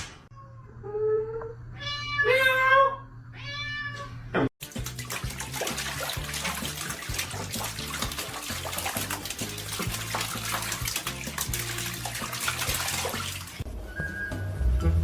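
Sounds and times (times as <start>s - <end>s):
cat meowing: 0.3s - 4.2s
running water: 4.6s - 13.7s.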